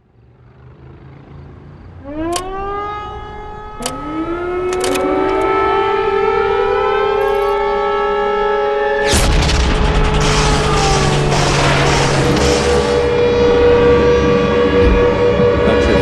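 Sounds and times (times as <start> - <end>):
sharp clicks: 2.3 - 9.3.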